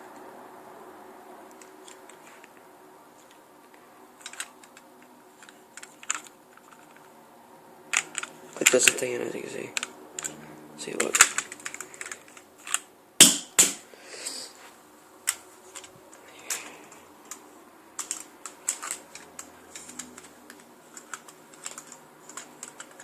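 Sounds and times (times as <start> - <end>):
plastic clicks of gun handling: 4.2 - 4.8, 5.4 - 7.0, 18.0 - 23.0.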